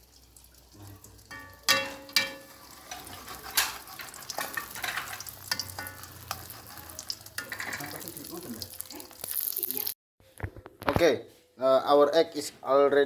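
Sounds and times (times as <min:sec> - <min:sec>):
egg sizzling in a pan: 0:00.0 - 0:10.0
sharp metal clanks: 0:01.3 - 0:03.8
spatula scraping a pan: 0:01.3 - 0:08.0.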